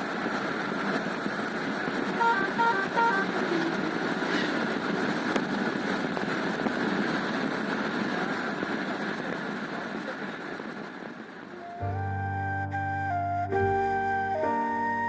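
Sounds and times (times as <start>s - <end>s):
car road and engine noise: 0.0s - 8.0s.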